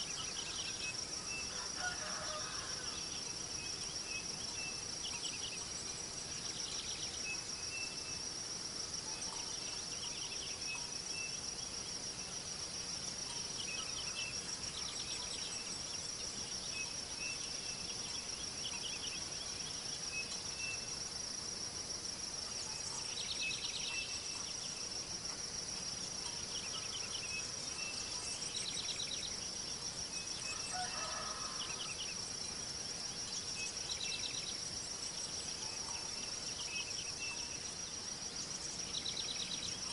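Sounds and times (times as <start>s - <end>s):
high-pitched insect chorus: 0.0s - 39.9s.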